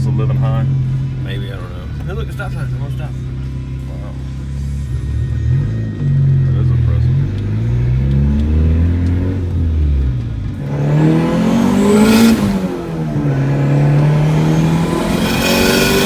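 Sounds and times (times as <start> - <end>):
car engine accelerating: 0.0 - 16.0
turbo rush at gearshift: 5.5 - 16.0.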